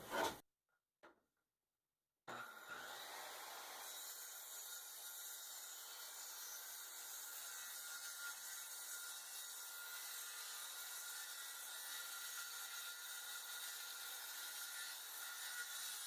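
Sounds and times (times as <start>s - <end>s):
saw cutting plywood: 0.0s - 0.4s, 2.3s - 16.0s.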